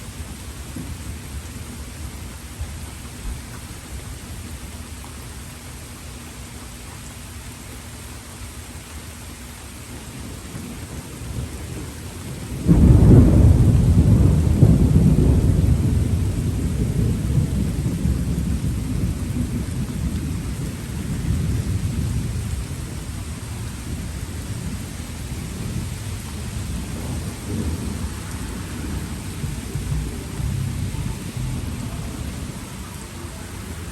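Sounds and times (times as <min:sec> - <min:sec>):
steady rain: 0:00.0 - 0:33.9
thunder clap and rumble: 0:10.2 - 0:33.9.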